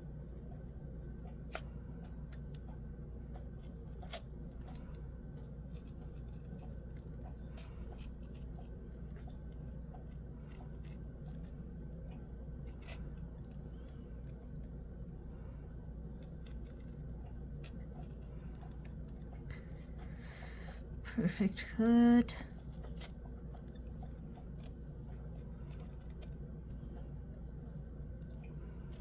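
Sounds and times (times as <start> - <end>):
scissors cutting packaging: 16.2 - 20.8.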